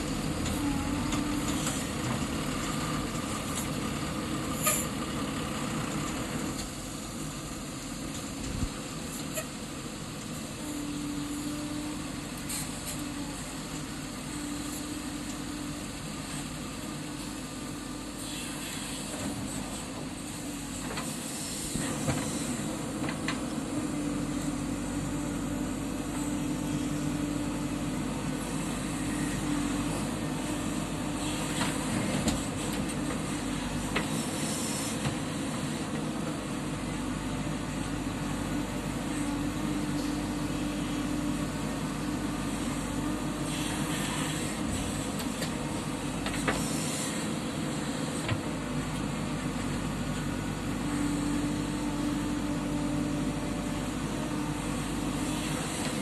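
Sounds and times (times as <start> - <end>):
backhoe diesel engine running: 0.0 - 56.0.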